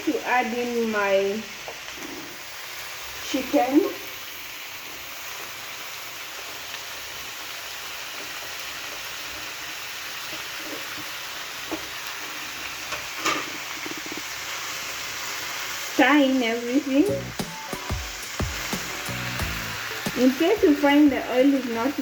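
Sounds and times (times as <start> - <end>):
chicken frying in hot oil: 0.0 - 17.3, 17.9 - 22.0.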